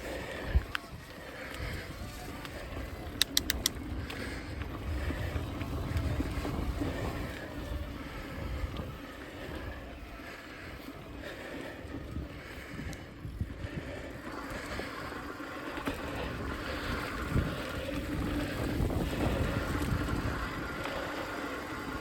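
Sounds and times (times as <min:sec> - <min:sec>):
bike tyre rumble on trail: 0:00.0 - 0:22.0
wind buffeting microphone: 0:00.0 - 0:22.0
sharp clicks: 0:03.1 - 0:03.9.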